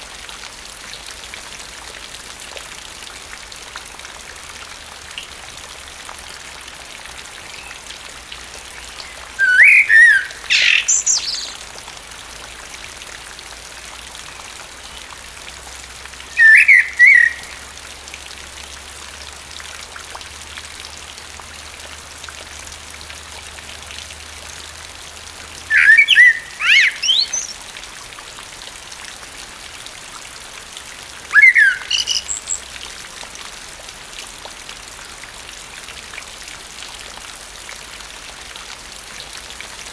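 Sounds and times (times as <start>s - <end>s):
rain hissing: 7.5s - 13.0s, 14.3s - 18.9s, 24.7s - 29.6s
blackbird singing: 8.9s - 11.6s, 16.3s - 17.5s, 25.7s - 27.6s, 31.3s - 32.7s.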